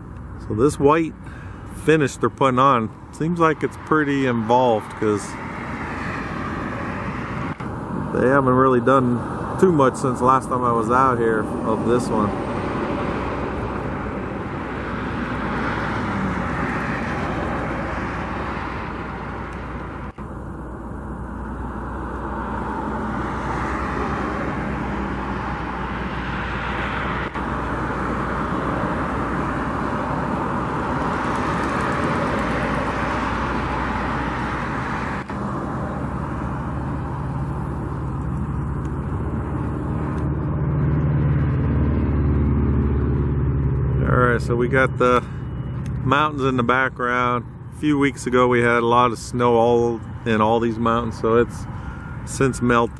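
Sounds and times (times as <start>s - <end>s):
car road noise: 0.0s - 52.9s.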